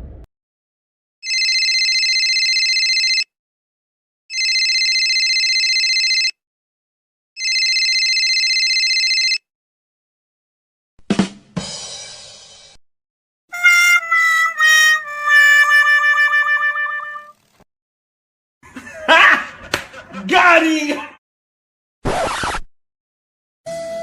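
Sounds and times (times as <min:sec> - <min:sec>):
phone ringing: 0:01.2 - 0:03.3, 0:04.3 - 0:06.4, 0:07.4 - 0:09.4
drum rimshot and cymbal crash: 0:11.1 - 0:12.8.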